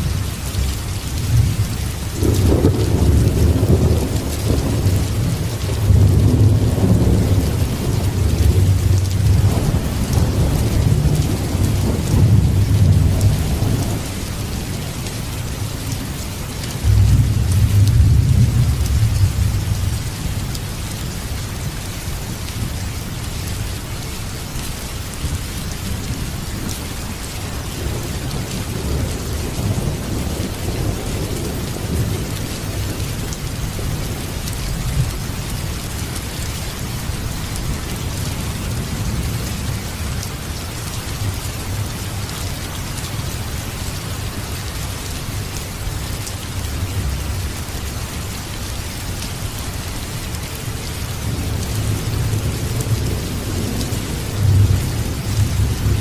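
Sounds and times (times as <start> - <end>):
heavy rain: 0.0 - 56.0
rolling thunder: 1.2 - 14.9, 16.8 - 20.0, 27.6 - 35.2.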